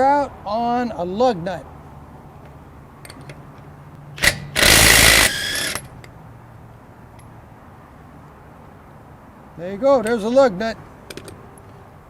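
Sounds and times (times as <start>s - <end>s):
impact wrench hammering: 4.2s - 5.9s.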